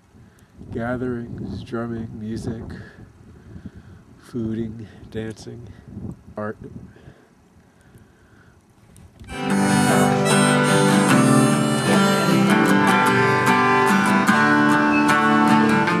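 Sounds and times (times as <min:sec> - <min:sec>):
harmonica: 0:09.3 - 0:16.0
strummed acoustic guitar: 0:09.3 - 0:16.0.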